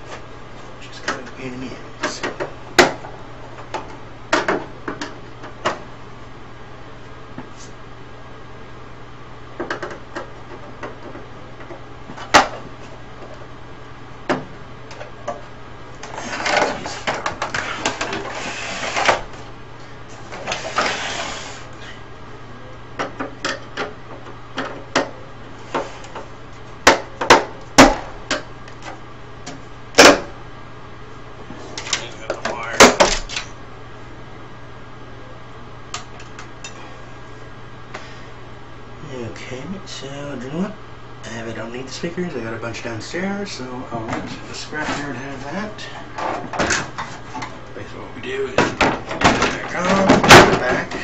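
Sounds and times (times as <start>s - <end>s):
steady low hum: 0.0s - 51.0s
scraping and rustling: 16.0s - 19.4s, 20.1s - 22.0s.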